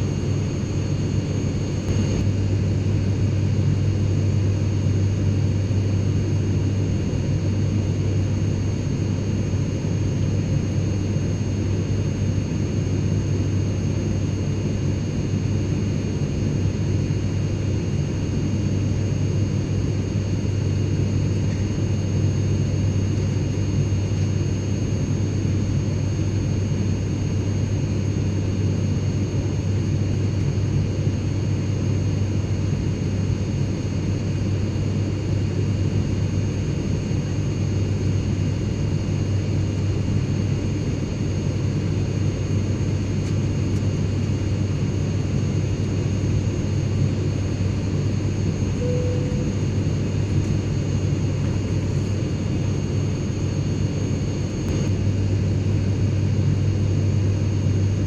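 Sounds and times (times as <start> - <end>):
airliner cabin engine rumble: 27.2 - 58.0
faint high steady tones: 48.8 - 49.6.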